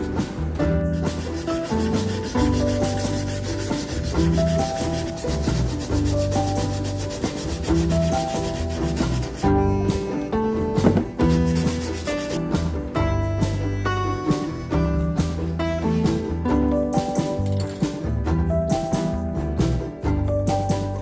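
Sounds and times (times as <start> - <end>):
background music: 0.0 - 21.0
sanding strokes: 0.3 - 10.3, 11.0 - 12.7.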